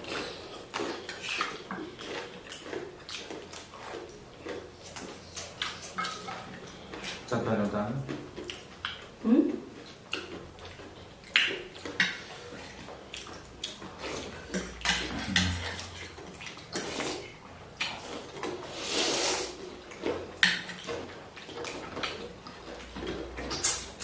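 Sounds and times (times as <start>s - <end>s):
slurping noodle soup: 13.9s - 19.8s.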